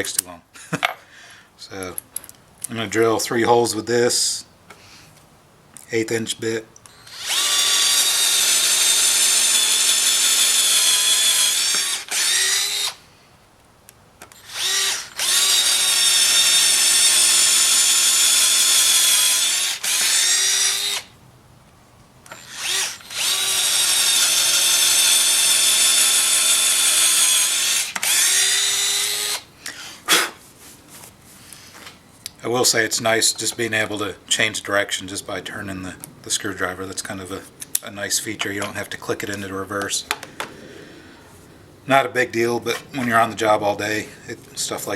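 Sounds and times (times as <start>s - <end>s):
drill trigger blips: 6.8s - 13.0s, 14.3s - 21.1s, 22.3s - 29.4s
power drill drilling through metal: 6.9s - 13.0s, 14.3s - 21.1s, 22.3s - 29.5s.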